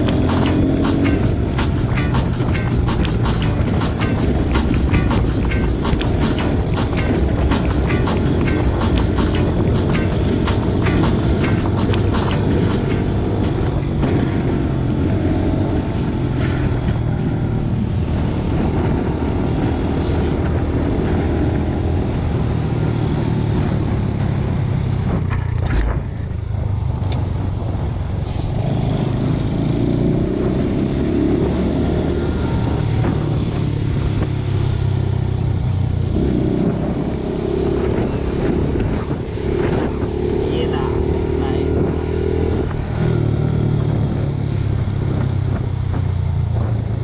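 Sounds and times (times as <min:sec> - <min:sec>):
motorcycle engine running: 0:00.0 - 0:16.2.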